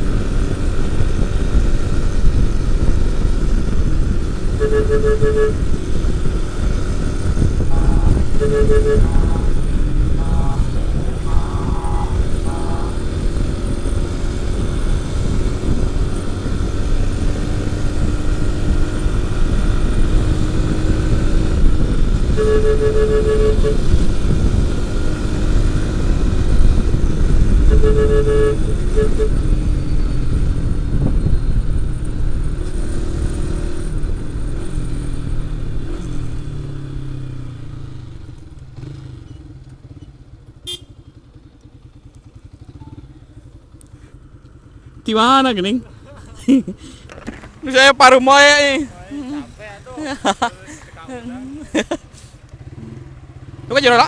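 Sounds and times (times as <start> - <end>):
wind noise: 0.0 - 34.4
motorcycle engine: 0.0 - 54.0
horn beeping: 4.5 - 6.0, 7.6 - 13.5, 21.8 - 24.3, 27.5 - 29.7, 40.6 - 41.2, 42.6 - 43.5.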